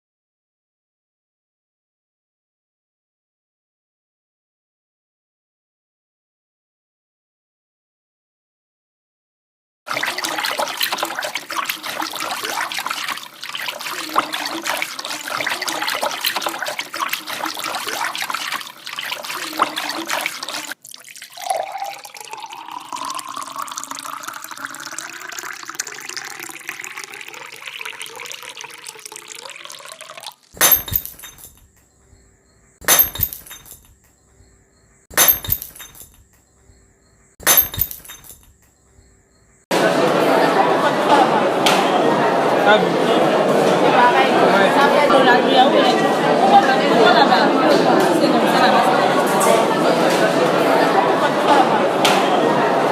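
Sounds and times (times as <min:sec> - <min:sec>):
water gushing: 0:09.9 - 0:31.0
water filling a container: 0:09.9 - 0:31.5
sharp ringing knocks: 0:32.8 - 0:34.1, 0:35.1 - 0:36.4.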